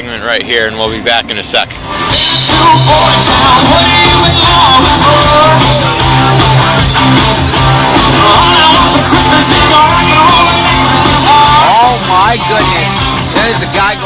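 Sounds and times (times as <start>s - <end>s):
loud rock music with guitar: 1.7s - 14.0s
person singing: 2.1s - 6.6s, 7.9s - 12.5s.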